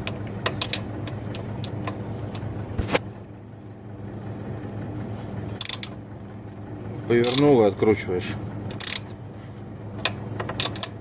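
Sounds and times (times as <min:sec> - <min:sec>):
steady low hum: 0:00.0 - 0:11.0
ratcheting wrench clicking: 0:05.6 - 0:06.0, 0:07.2 - 0:07.5, 0:08.7 - 0:09.2, 0:10.0 - 0:11.0.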